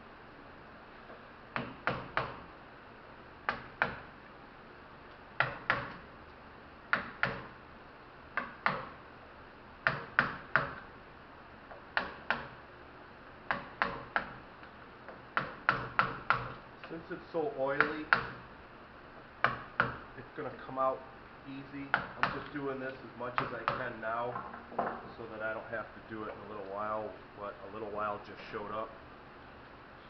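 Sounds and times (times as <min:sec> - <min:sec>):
hammer tapping on metal: 0:06.9 - 0:07.5, 0:13.5 - 0:14.4, 0:15.1 - 0:17.0, 0:17.8 - 0:18.4.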